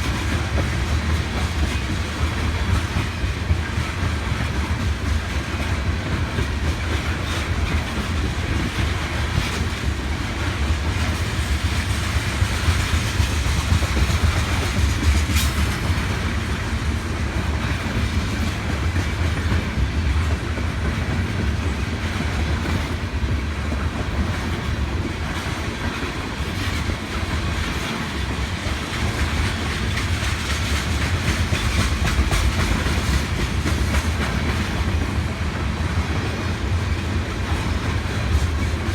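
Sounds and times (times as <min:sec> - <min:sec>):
clickety-clack over rail joints: 0:00.0 - 0:38.9
train wheels rumbling on rails: 0:00.0 - 0:38.9.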